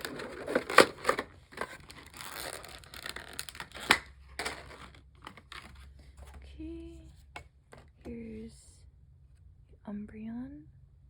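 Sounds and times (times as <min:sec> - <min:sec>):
packaging crinkling and tearing: 0:00.0 - 0:05.9.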